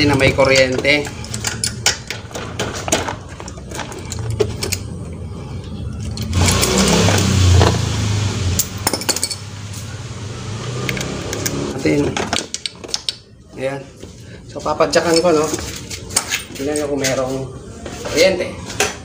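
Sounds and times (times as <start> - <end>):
hand tools clinking: 0.0 - 5.2, 8.6 - 9.5.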